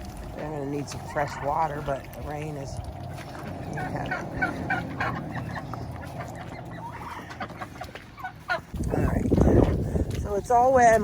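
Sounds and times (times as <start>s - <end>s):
rain patter: 0.0s - 6.7s
chickens clucking: 0.3s - 9.8s.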